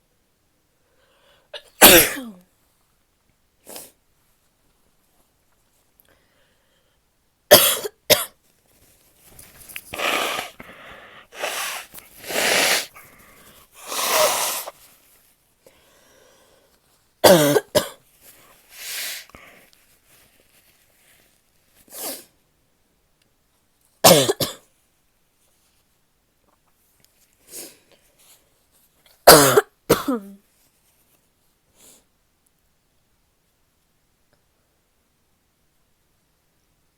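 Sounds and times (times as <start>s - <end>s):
woman coughing: 1.6s - 2.4s, 7.5s - 8.3s, 17.2s - 18.0s, 24.1s - 24.6s, 29.3s - 30.4s
noisy breathy sounds: 9.9s - 14.8s.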